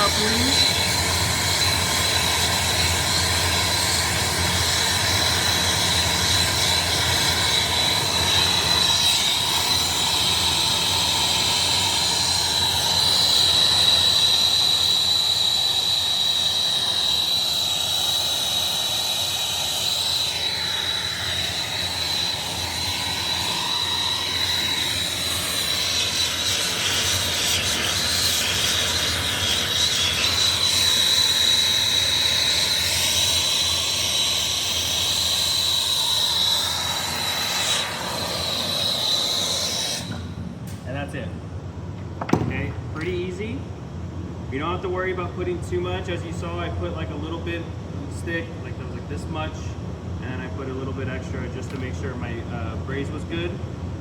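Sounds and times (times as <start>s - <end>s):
brazing torch screaming hiss: 0.0s - 40.4s.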